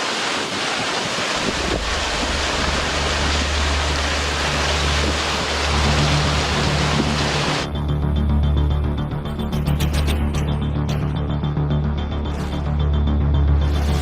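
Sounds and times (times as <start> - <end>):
heavy rain hissing on microphone: 0.0 - 7.6
low music drone: 1.4 - 14.0.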